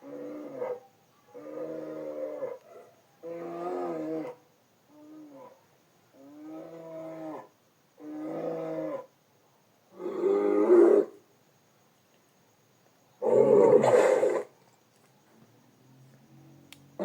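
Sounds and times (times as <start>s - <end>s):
bear growling grunts and moans: 13.2s - 14.5s.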